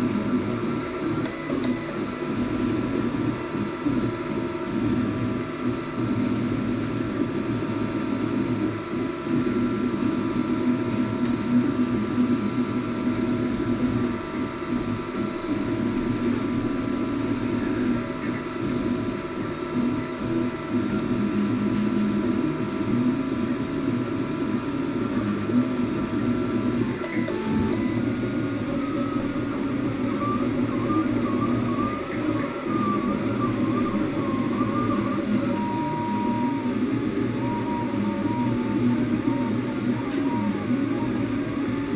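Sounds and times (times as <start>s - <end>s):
steady mechanical whir: 0.0s - 41.9s
three d printer humming and whining: 0.0s - 41.9s
stepper motors whining: 25.0s - 41.9s.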